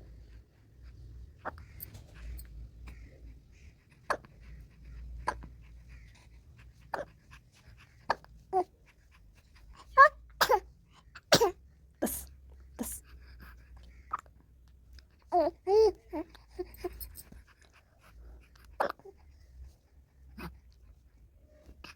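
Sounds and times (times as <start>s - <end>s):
baby making squeaky vocal sounds: 9.9s - 10.6s, 15.3s - 17.2s.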